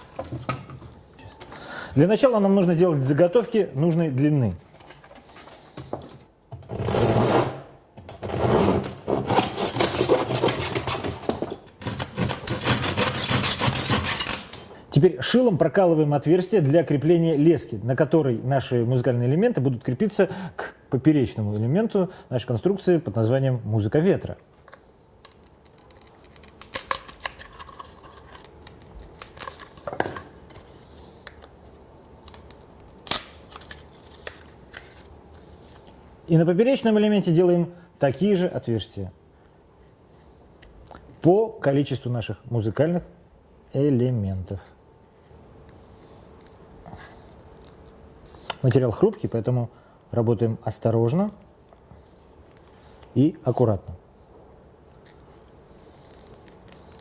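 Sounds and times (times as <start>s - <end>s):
hacksaw rasping through tube: 11.8s - 14.6s.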